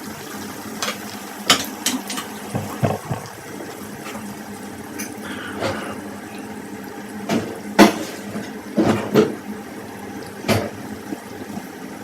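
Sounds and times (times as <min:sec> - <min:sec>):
food deep frying in hot oil: 0:00.0 - 0:12.0
oil clicking and popping: 0:00.8 - 0:04.4.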